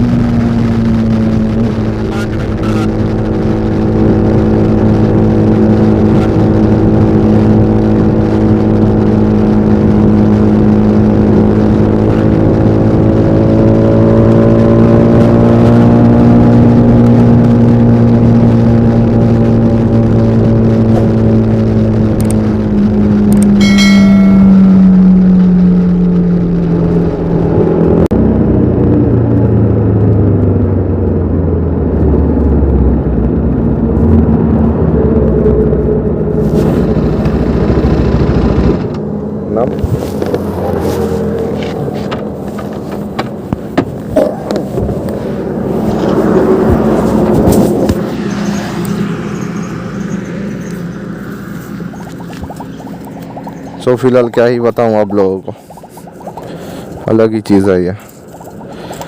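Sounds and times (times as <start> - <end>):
motorcycle engine running: 0.0 - 59.0
brief high-pitched tone: 23.5 - 26.0.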